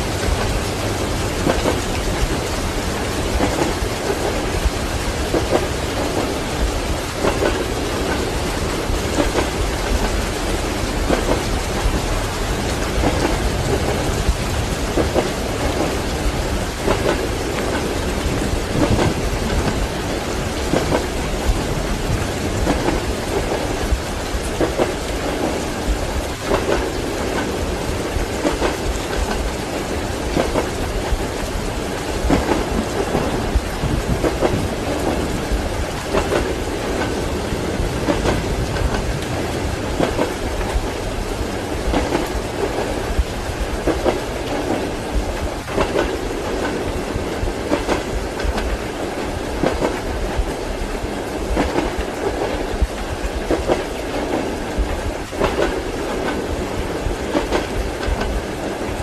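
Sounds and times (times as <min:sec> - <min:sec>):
wheels clicking over rail joints: 0:00.0 - 0:50.6
rain hiss: 0:00.0 - 0:59.0
train low rumble: 0:00.0 - 0:59.0.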